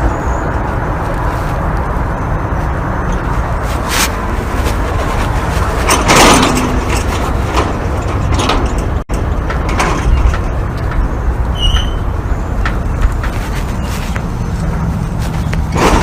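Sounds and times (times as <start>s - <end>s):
metal gate scraping and rattling: 4.8s - 16.0s
high squeak: 11.5s - 12.1s.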